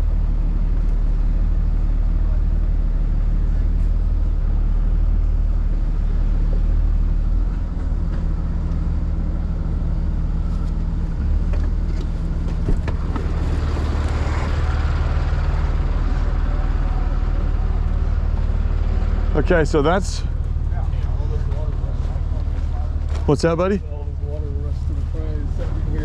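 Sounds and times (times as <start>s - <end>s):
tow truck engine droning: 0.0s - 26.0s.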